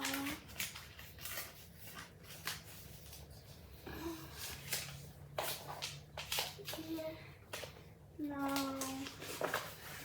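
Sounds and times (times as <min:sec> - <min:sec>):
scissors cutting paper: 0:00.0 - 0:03.3
paper rustling: 0:00.0 - 0:10.0.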